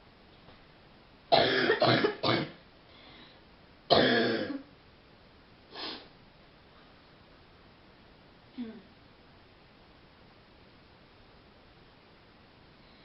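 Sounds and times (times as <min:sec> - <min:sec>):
woman coughing: 0:01.3 - 0:02.6, 0:03.9 - 0:04.7.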